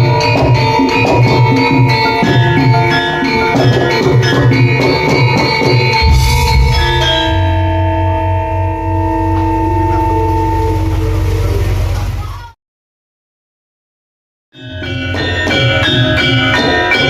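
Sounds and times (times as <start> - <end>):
drum: 0.0 - 10.3
struck bronze metallophones: 0.0 - 11.8, 14.6 - 17.0.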